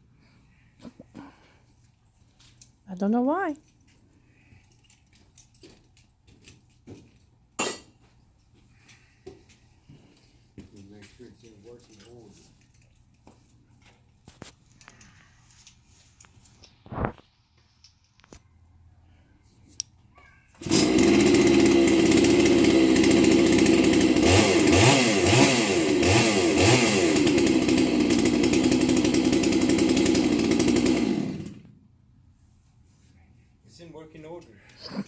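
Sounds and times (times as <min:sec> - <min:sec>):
chainsaw running and revving: 0:20.6 - 0:31.7.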